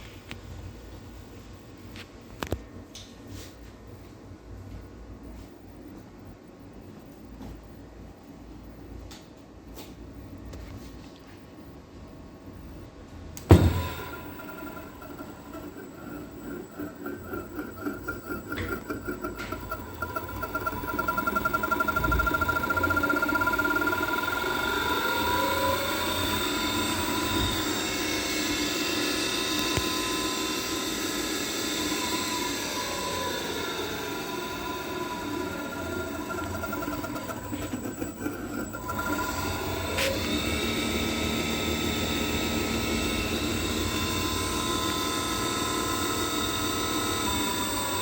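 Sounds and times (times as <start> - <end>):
servo motor whine: 13.4 - 48.0.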